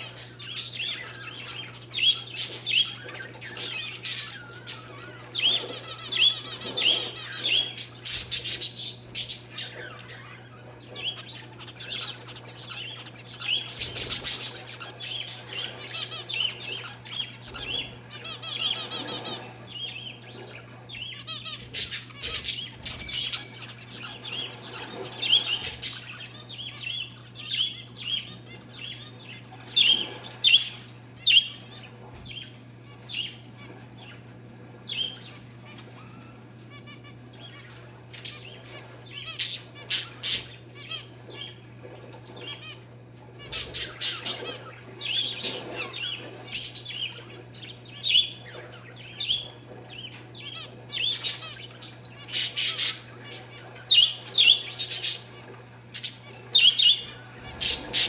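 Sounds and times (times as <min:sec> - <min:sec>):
small birds chirping: 0:00.0 - 0:58.0.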